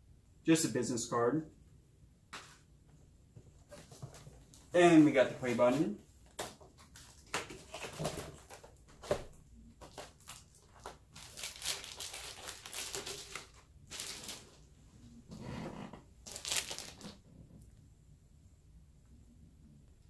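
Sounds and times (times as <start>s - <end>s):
packaging crinkling and rustling: 3.7s - 14.7s, 16.2s - 17.2s
packaging crackles: 9.8s - 14.6s, 16.2s - 17.2s.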